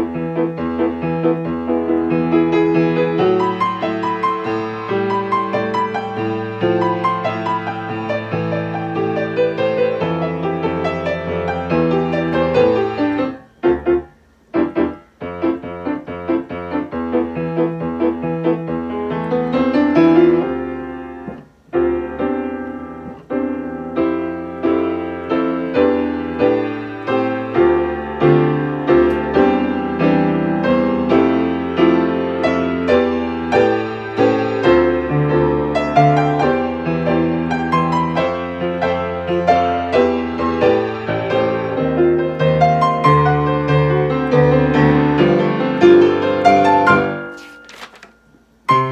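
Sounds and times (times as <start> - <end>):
short detached piano chords: 0.0 - 31.5
lively piano accompaniment: 0.0 - 48.9.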